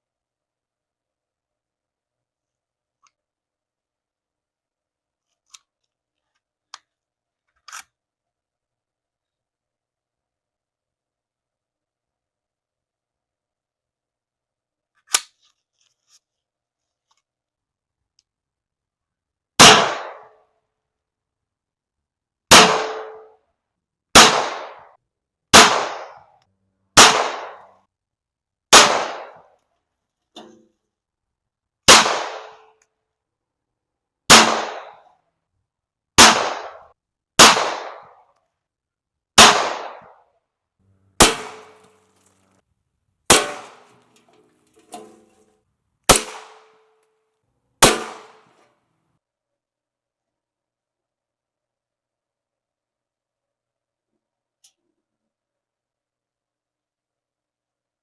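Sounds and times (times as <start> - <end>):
pistol shots echoing: 19.6 - 20.3, 22.5 - 23.3, 24.2 - 24.8, 25.6 - 26.2, 27.0 - 27.7, 28.8 - 29.4, 31.9 - 32.6, 34.3 - 35.0, 36.2 - 36.8, 37.4 - 38.2, 39.4 - 40.2, 41.2 - 42.0, 43.3 - 44.0, 46.1 - 46.8, 47.8 - 48.6.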